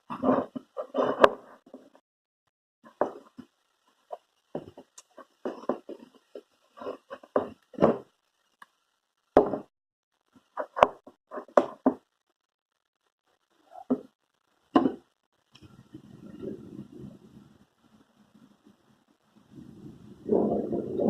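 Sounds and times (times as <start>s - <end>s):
objects knocking on tabletop: 9.4s - 9.7s.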